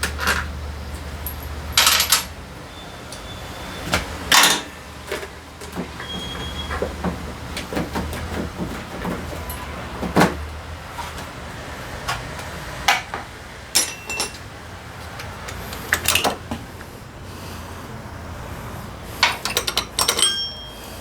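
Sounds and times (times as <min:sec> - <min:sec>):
metal parts clinking: 0:00.0 - 0:02.4, 0:13.8 - 0:14.4, 0:15.2 - 0:16.4, 0:19.2 - 0:20.7.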